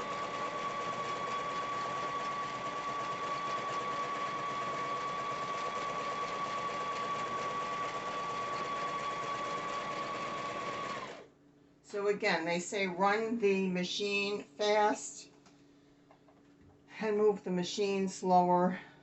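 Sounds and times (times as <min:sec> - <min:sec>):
sewing machine motor whining: 0:00.0 - 0:11.2.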